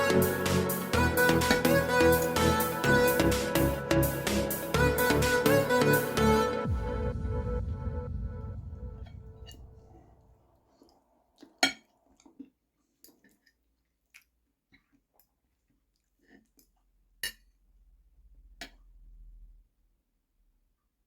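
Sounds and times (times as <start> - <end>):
background music: 0.0 - 9.9
faint chewing: 10.6 - 17.6.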